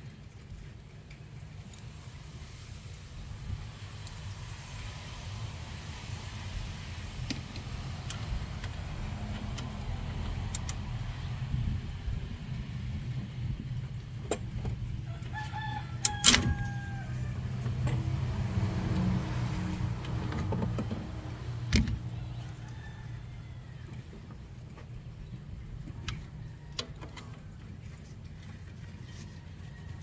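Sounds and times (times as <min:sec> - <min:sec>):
rooster crowing: 0:15.0 - 0:18.2, 0:22.1 - 0:24.1.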